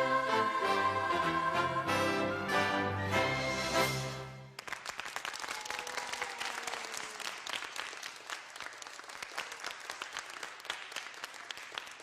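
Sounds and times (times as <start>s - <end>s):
audience applauding: 4.5s - 12.0s.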